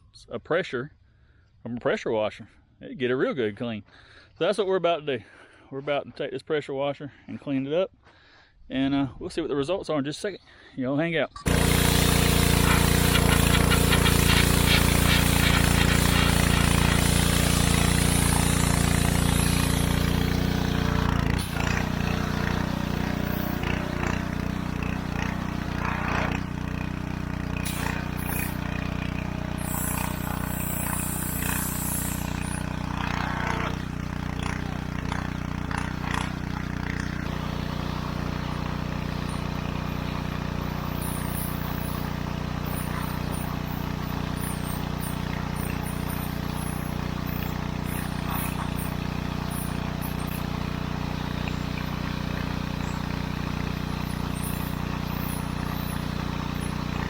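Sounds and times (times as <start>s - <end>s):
pressure washer running: 11.4s - 57.0s
hiss: 11.5s - 20.6s, 27.6s - 28.7s, 29.6s - 32.7s, 40.6s - 50.6s, 53.8s - 57.0s.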